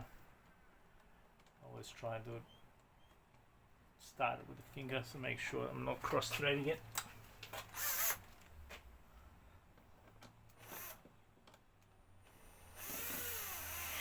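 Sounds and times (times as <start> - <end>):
cordless drill driving a bolt: 7.6 - 8.4, 10.5 - 11.1, 12.3 - 14.0.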